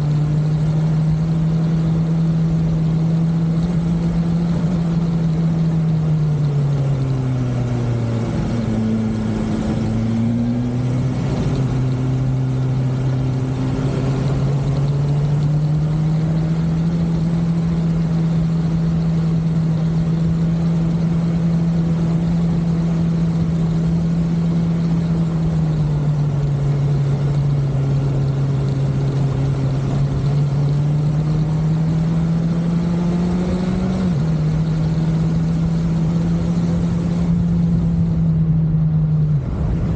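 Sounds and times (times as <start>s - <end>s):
motorcycle engine on the road: 0.0s - 39.9s.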